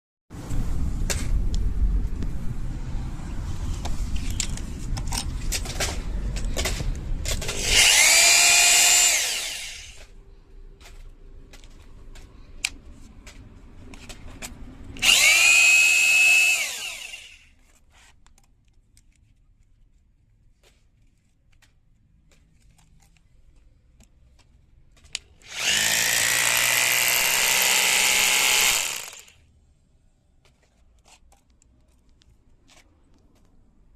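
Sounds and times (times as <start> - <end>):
rotary hammer drill motor whine: 7.5 - 10.1, 15.0 - 17.5, 25.4 - 29.4.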